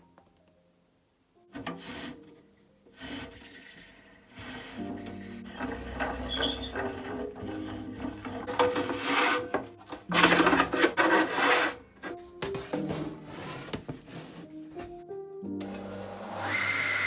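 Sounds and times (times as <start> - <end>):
light background music: 0.0 - 17.0
hand tool rasping on wood: 8.8 - 11.8.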